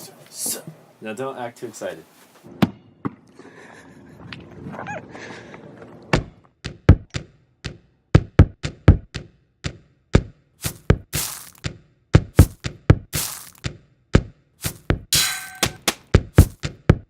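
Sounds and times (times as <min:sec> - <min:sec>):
rhythmic thunks and knocks: 0:06.2 - 0:17.0.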